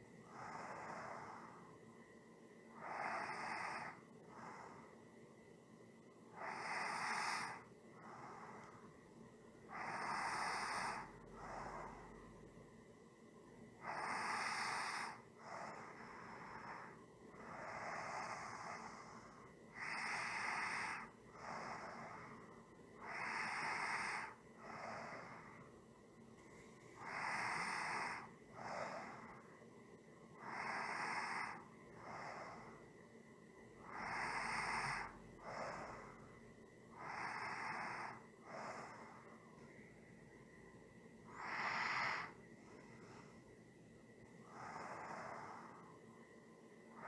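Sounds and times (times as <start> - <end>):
person breathing slowly: 0.0 - 2.0, 2.6 - 5.3, 6.2 - 12.5, 13.8 - 33.2, 33.8 - 40.6, 41.2 - 47.0.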